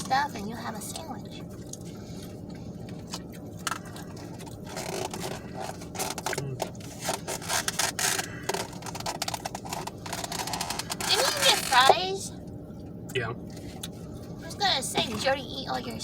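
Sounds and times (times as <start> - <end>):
crunching of eating fried chicken: 1.5 - 11.7
packaging rustling: 4.5 - 11.9.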